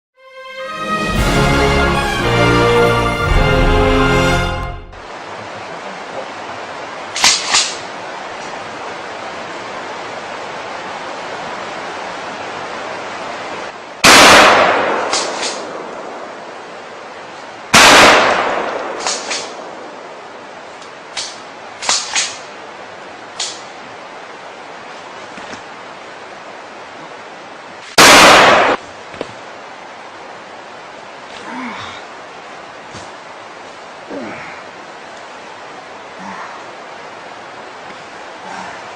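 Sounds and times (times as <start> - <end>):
loud gunshots with echo: 14.0 - 15.9, 17.7 - 19.7, 28.0 - 28.8.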